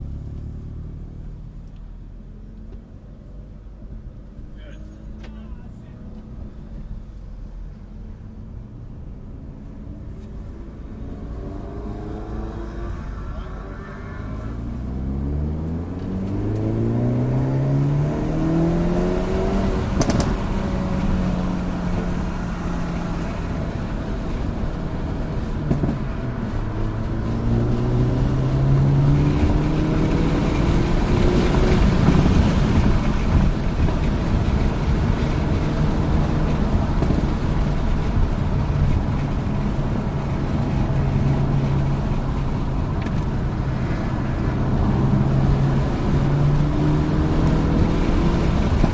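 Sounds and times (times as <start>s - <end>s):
car engine accelerating hard: 10.8s - 48.9s.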